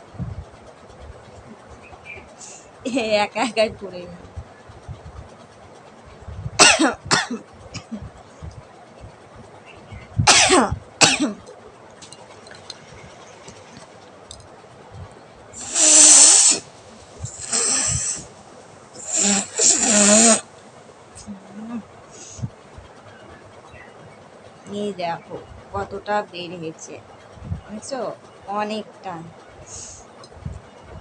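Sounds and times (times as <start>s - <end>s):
woman blowing her nose: 15.6s - 16.6s, 17.3s - 18.2s, 19.0s - 20.4s.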